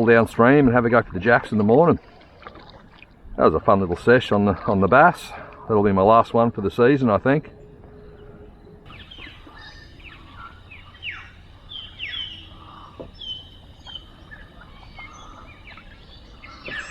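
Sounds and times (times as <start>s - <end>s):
low background hiss: 4.8s - 16.9s
birds whistling and chirping: 5.2s - 16.9s.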